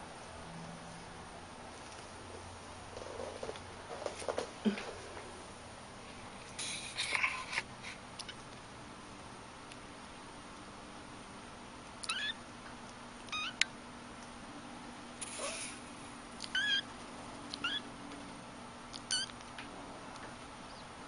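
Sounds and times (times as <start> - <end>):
cat meowing: 12.0 - 12.4, 13.3 - 13.6, 16.4 - 16.9, 17.5 - 17.8.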